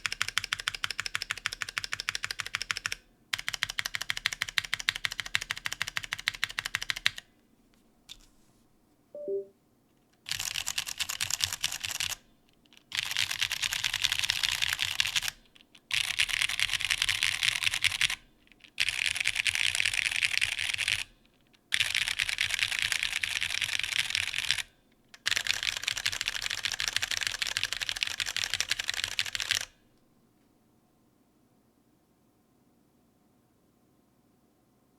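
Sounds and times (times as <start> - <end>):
fast typing on mechanical keyboard: 0.0 - 7.2, 10.3 - 12.2, 12.8 - 21.1, 21.7 - 29.7.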